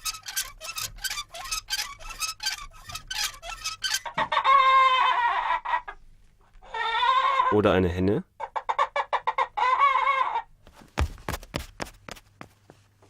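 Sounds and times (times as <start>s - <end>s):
rhythmic squeaking and clinking: 0.0s - 4.2s
hen cackling: 3.0s - 6.0s, 6.6s - 7.6s, 8.4s - 10.5s.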